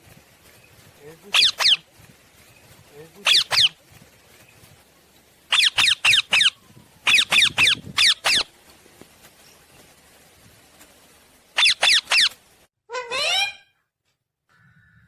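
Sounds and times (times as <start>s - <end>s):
parakeet squawking: 1.3s - 1.8s, 3.2s - 3.8s, 5.5s - 8.5s, 11.6s - 13.8s.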